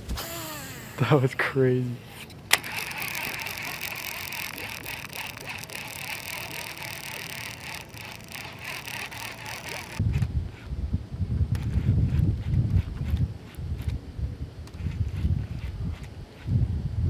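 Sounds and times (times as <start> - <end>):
fishing reel whirring: 0.2 - 0.9, 2.2 - 10.3.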